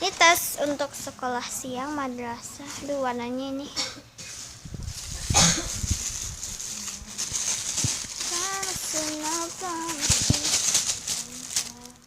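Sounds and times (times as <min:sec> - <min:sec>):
child's sing-song voice: 0:08.1 - 0:12.0.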